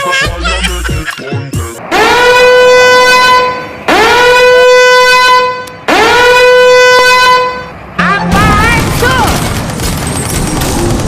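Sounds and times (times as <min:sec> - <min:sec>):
vehicle air horn blasts: 0:01.8 - 0:08.3.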